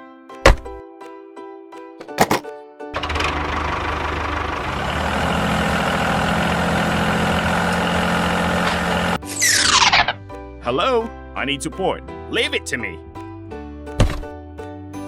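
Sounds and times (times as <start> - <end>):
engine running steadily: 3.0 - 9.8.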